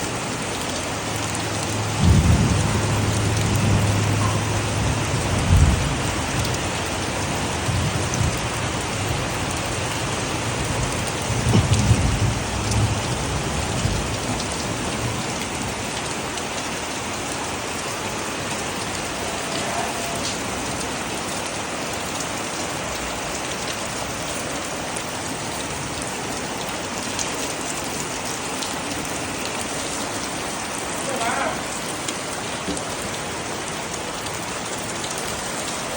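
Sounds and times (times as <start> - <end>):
heavy rain falling: 0.0 - 35.9
low rumbles: 0.5 - 6.8.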